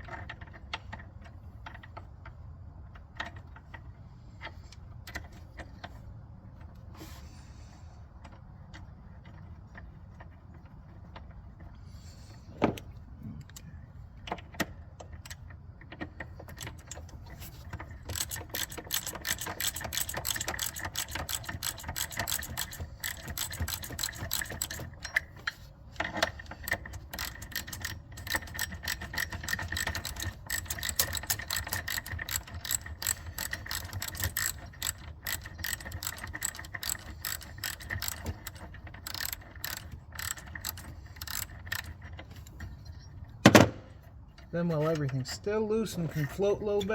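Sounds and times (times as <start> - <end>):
ratchet wrench clicking: 14.3 - 42.8.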